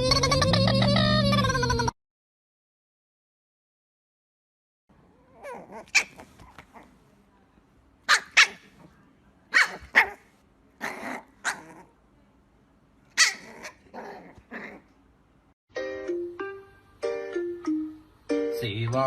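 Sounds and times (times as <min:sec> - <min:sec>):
dog barking: 0:08.1 - 0:08.8, 0:09.5 - 0:11.8, 0:13.2 - 0:14.8.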